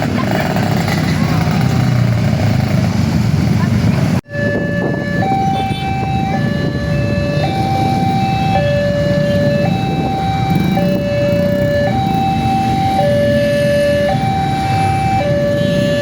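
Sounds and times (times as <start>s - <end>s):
road traffic: 0.0s - 16.0s
level-crossing alarm two-tone signal: 4.3s - 16.0s.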